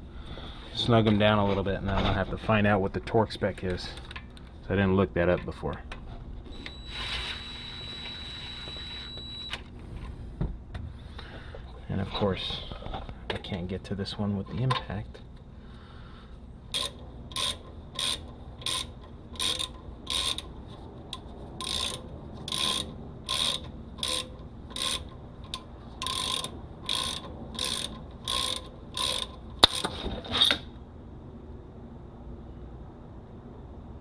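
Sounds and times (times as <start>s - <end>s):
ratchet wrench clicking: 16.7s - 29.9s.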